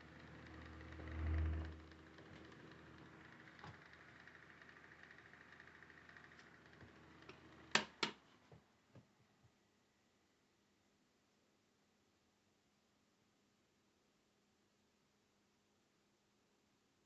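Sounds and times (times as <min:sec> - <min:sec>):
table fan whirring and humming: 0:00.0 - 0:08.8.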